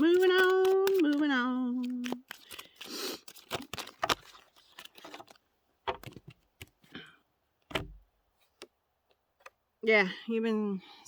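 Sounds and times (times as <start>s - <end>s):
cards clicking and tapping: 0.0s - 6.8s
cards rustling: 0.0s - 6.9s.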